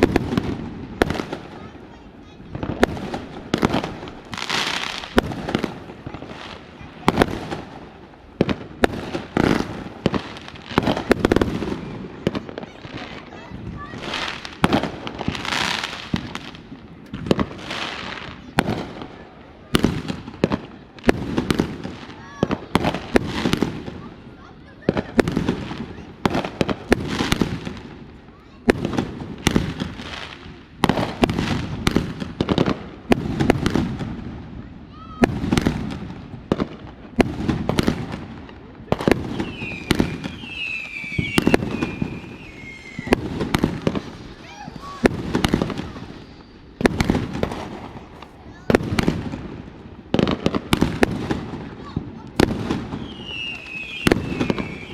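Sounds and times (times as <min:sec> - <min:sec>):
firework bangs: 0:00.0 - 0:54.9
whistling fireworks sliding down: 0:38.9 - 0:49.1, 0:52.4 - 0:54.9.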